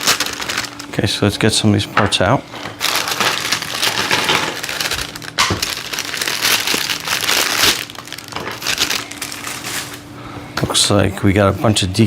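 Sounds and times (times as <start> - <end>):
plastic packaging crinkling: 0.0 - 1.4, 2.6 - 10.1.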